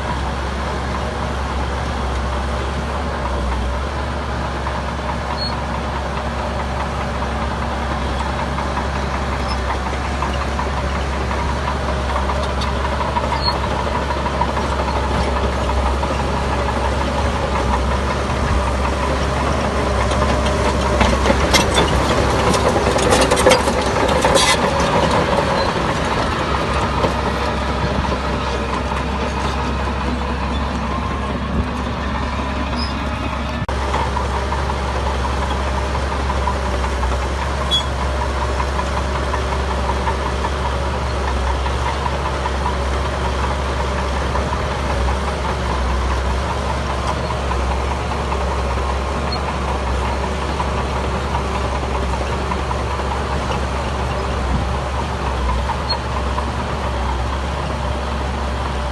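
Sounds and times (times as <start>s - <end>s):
heavy diesel engine running: 0.0s - 58.9s
metallic clanks and rattles: 17.6s - 34.2s.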